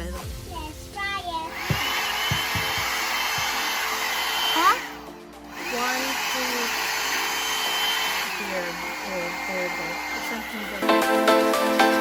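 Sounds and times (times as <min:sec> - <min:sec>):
hair dryer brush blowing: 0:01.5 - 0:12.0
soft knocks: 0:01.6 - 0:03.5.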